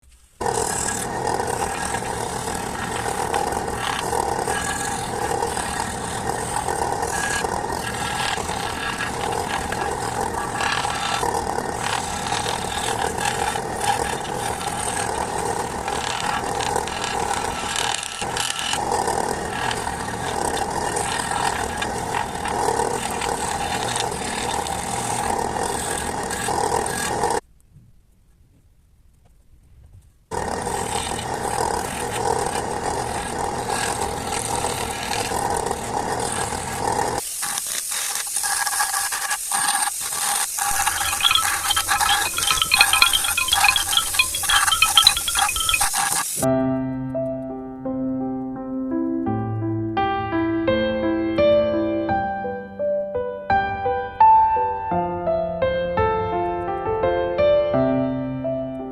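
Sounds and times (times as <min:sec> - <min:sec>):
power tool motor working wood: 0:00.4 - 0:27.4, 0:30.3 - 0:46.5.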